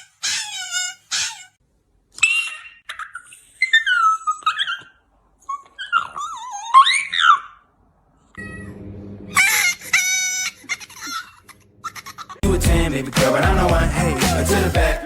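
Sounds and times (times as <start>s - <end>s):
dog whining: 0.0s - 1.6s, 2.2s - 7.6s.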